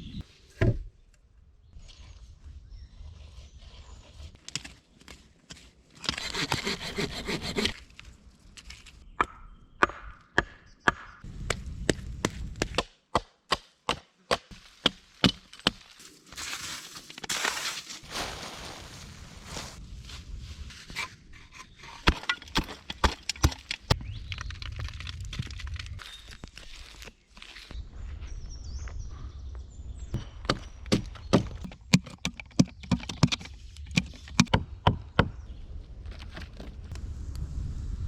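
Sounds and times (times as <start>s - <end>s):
rasping strokes on wood: 6.0s - 7.8s.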